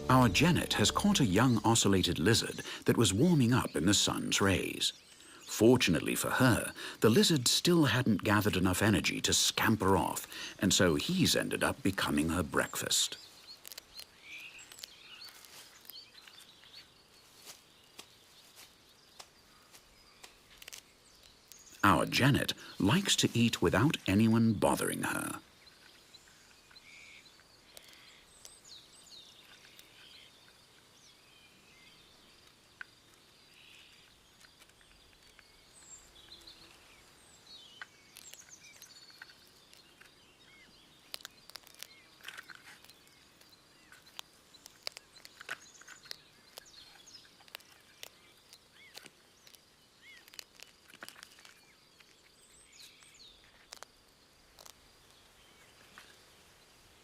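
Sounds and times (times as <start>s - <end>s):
bird chirps: 0.0s - 7.5s, 19.0s - 32.3s, 33.1s - 53.8s
sharp clicks and crackles: 13.4s - 16.4s, 20.2s - 21.7s, 41.0s - 52.2s, 52.8s - 54.8s.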